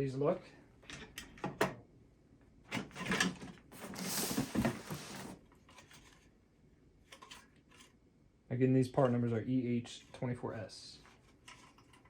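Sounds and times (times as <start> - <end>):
rustling scrape: 3.7 - 6.1.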